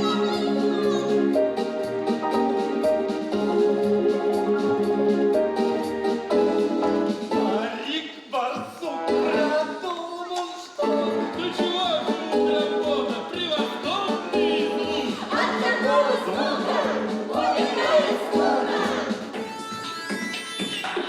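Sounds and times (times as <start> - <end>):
voices singing over accompaniment: 7.1 - 10.0, 10.8 - 19.8.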